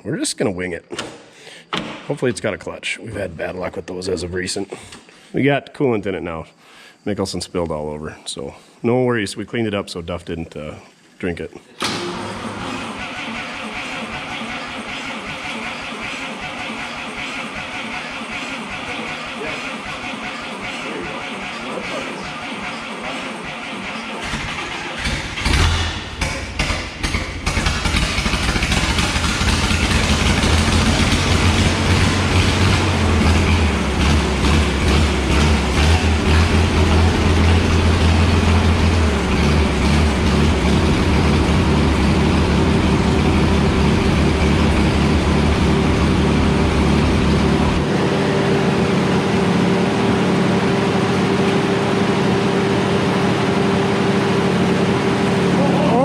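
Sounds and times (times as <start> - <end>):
tractor engine running: 11.8 - 56.0.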